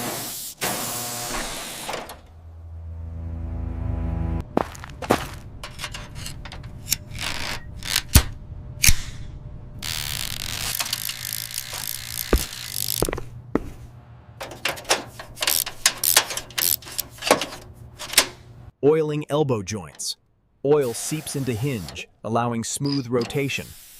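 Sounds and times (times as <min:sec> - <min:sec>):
metal clicks and knocks: 0:05.6 - 0:08.3, 0:14.4 - 0:18.5.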